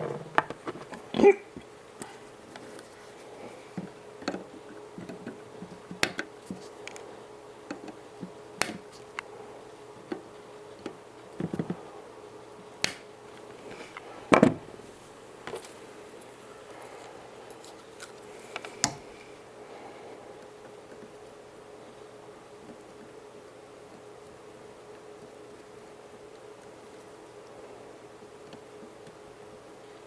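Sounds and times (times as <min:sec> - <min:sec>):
hands handling plastic casing: 0:00.0 - 0:09.3
faint steady hum: 0:00.0 - 0:30.0.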